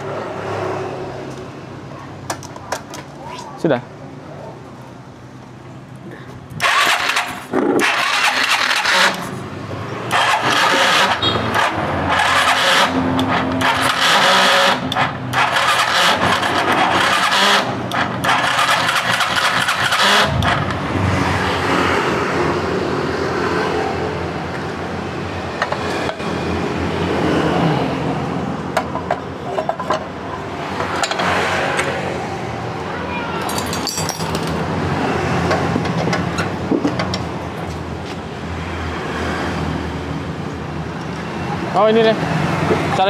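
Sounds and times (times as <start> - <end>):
scooter engine coughing and revving: 6.0 - 22.6.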